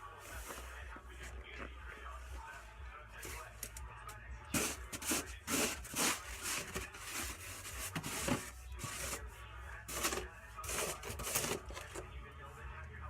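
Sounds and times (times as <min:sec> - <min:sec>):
snow crunching and scraping: 0:00.0 - 0:02.8.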